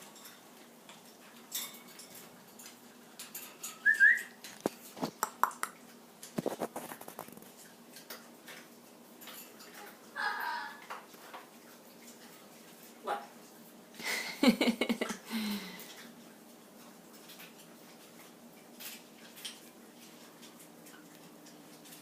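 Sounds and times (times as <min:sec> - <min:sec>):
parrot rising whistle: 0:03.8 - 0:04.3
clicks and taps: 0:04.6 - 0:06.8.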